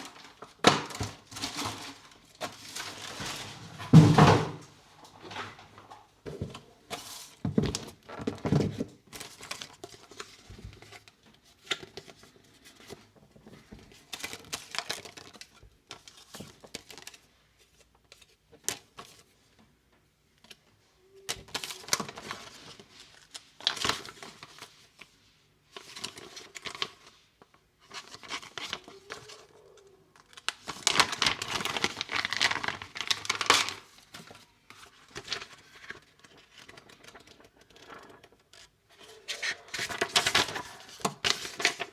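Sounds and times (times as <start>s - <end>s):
packaging crinkling and tearing: 14.1s - 17.3s, 21.3s - 24.7s, 27.9s - 41.9s.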